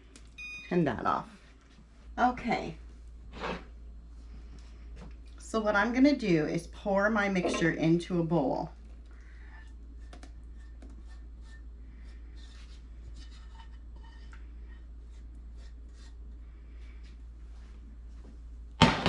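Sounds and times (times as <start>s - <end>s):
steady low hum: 0.0s - 19.0s
utensil scraping a saucepan: 9.5s - 16.2s.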